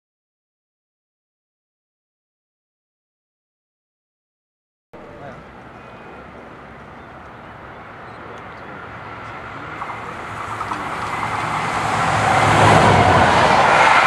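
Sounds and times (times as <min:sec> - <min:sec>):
train rumbling past: 0:05.0 - 0:14.0.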